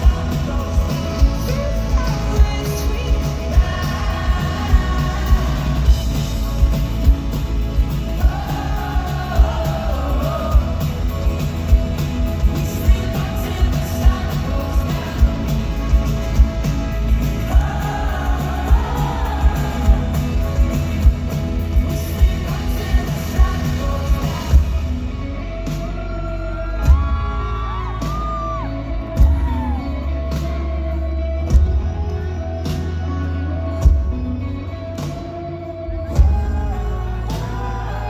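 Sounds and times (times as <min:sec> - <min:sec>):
steady drum beat: 0:00.0 - 0:26.2, 0:26.8 - 0:30.7
lead and backing vocals: 0:00.0 - 0:38.0
live band playing indie pop: 0:00.0 - 0:38.0.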